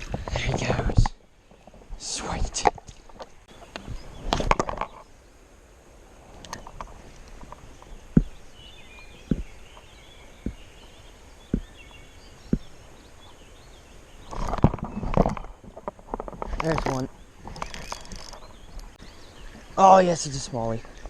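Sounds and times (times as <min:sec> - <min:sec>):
soft thumps: 0:06.7 - 0:08.4, 0:09.2 - 0:09.8
faint bird chirps: 0:07.6 - 0:15.8.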